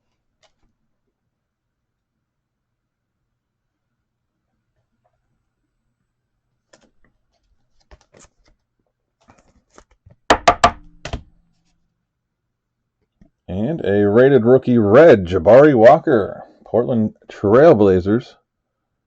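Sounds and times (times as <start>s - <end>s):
sharp knocks on table: 10.3s - 11.3s.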